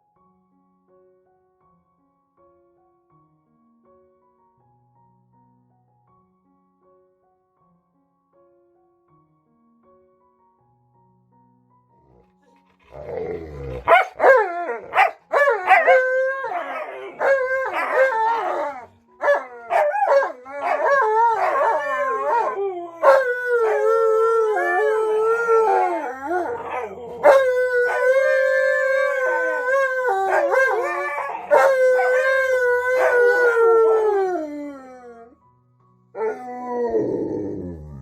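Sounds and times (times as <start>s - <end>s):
dogs howling and yowling: 12.6s - 35.4s, 36.2s - 38.0s.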